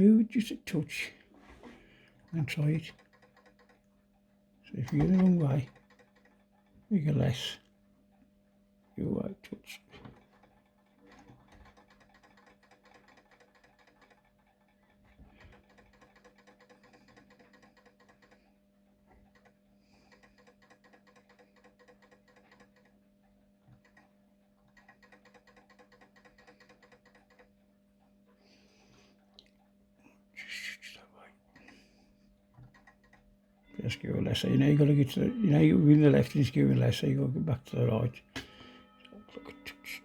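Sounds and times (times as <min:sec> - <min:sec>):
clock ticking rapidly: 0:15.5 - 0:18.4, 0:19.3 - 0:23.0, 0:24.7 - 0:27.6.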